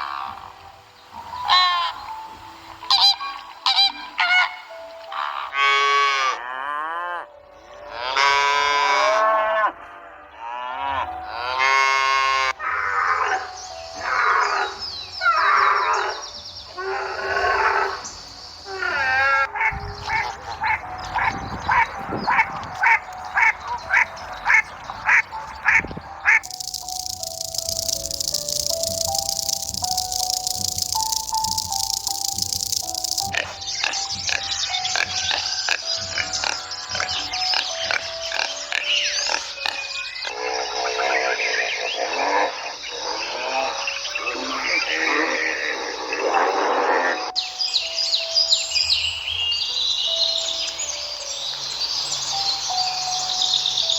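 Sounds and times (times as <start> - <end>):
animal clicks and chirps: 20.0 - 39.9.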